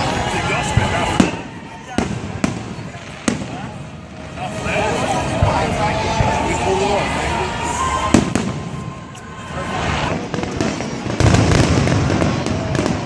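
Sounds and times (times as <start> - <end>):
fireworks bangs: 0.0 - 13.0.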